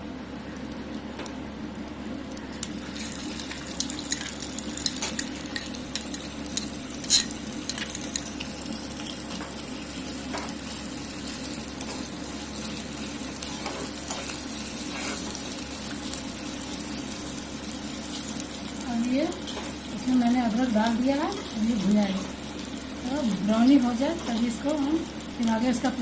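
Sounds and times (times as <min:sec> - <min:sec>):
frying sizzle: 0:00.0 - 0:26.0.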